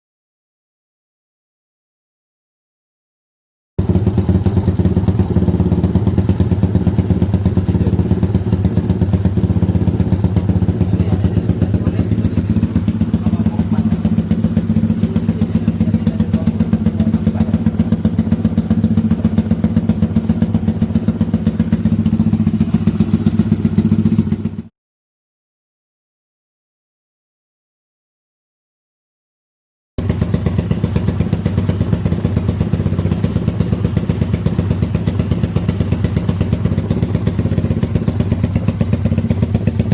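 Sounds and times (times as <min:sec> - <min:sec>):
motorcycle engine idling: 0:03.8 - 0:24.7, 0:30.0 - 0:39.9.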